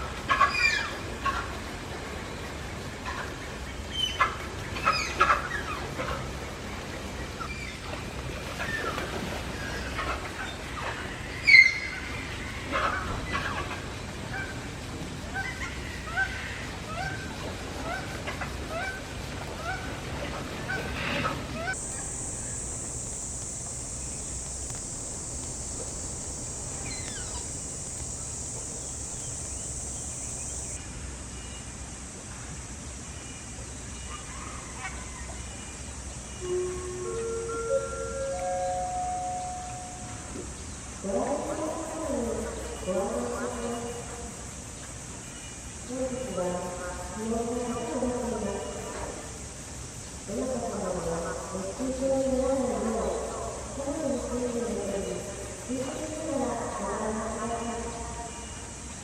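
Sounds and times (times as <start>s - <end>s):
cicadas buzzing: 21.7s - 30.8s.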